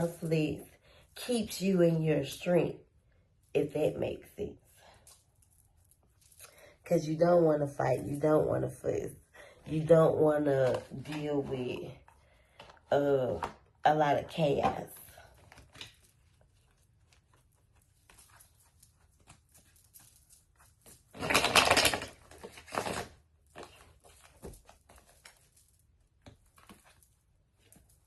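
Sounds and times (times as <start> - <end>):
cards rustling: 14.6 - 28.0.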